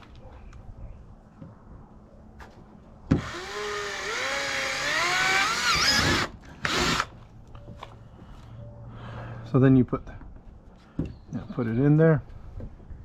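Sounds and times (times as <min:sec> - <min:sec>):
power drill whining on plastic: 0:03.1 - 0:07.1.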